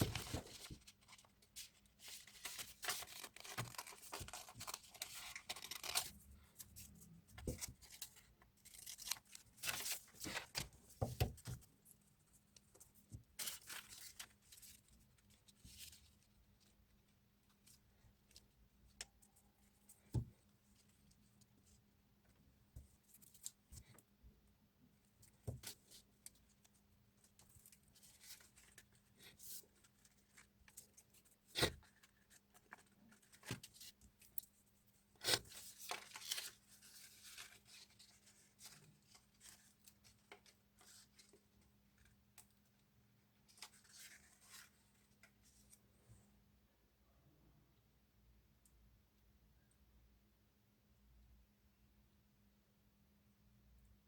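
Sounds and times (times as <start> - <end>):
paper rustling: 0.0 - 11.6.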